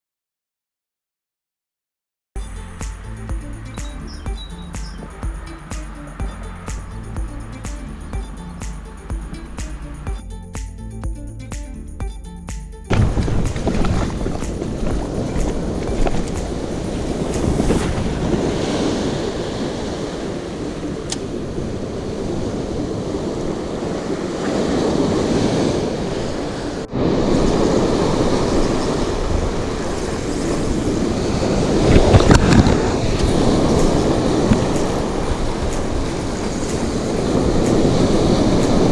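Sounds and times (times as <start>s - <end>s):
waves breaking on shore: 17.5s - 38.9s.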